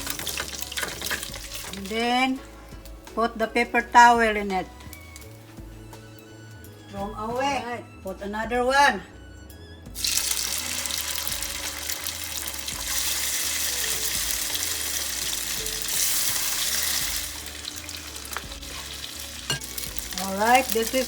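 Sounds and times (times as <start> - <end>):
chicken sizzling in hot oil: 0.0 - 2.2, 10.0 - 21.0.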